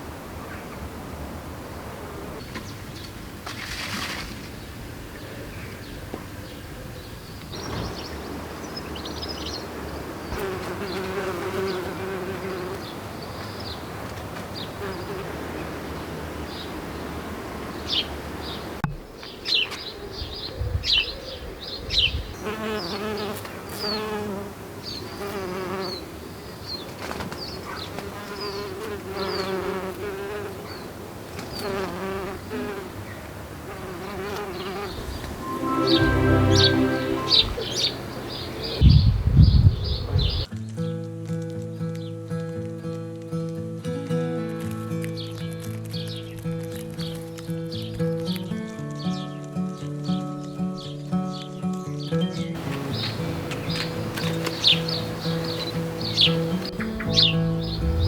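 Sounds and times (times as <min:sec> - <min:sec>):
small birds chirping: 0:48.9 - 0:58.0.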